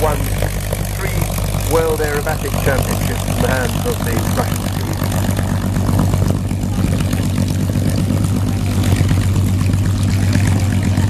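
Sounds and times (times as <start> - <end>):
radial plane engines droning: 0.0 - 11.0.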